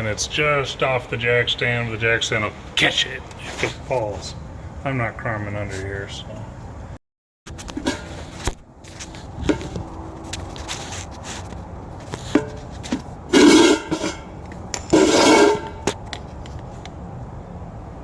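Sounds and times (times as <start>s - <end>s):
metallic grinding and ringing: 13.3s - 15.9s.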